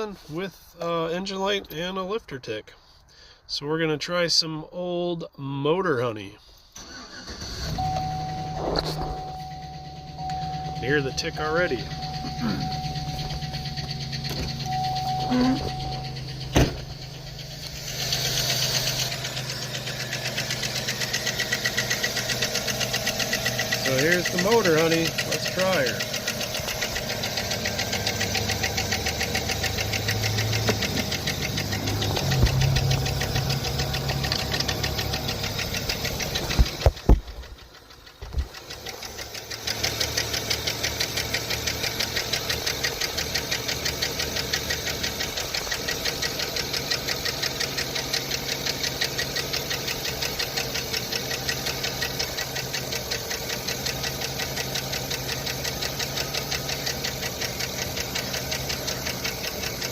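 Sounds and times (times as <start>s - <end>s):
engine idling with lifter tick: 6.5s - 59.9s
sharp engine knocks: 12.1s - 15.0s, 15.6s - 17.8s, 29.2s - 37.6s.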